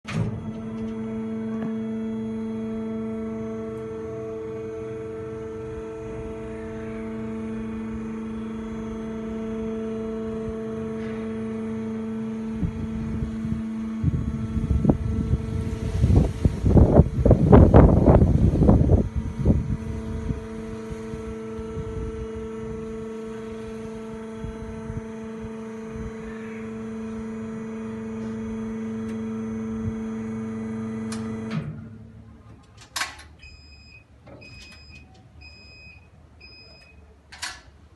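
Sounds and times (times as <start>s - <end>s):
lift humming: 0.0s - 37.9s
short electronic beeps: 33.4s - 37.1s.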